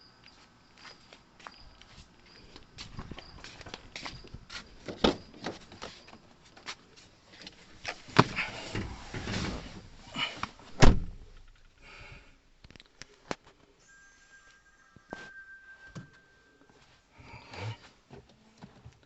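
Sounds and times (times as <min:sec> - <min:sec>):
loud thud: 0:10.8 - 0:11.3.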